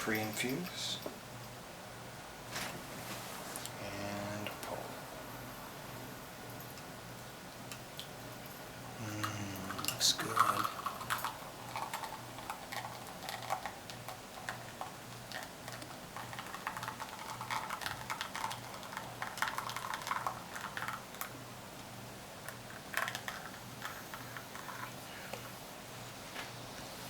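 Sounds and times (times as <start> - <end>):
espresso dripping into cup: 9.7 - 21.3.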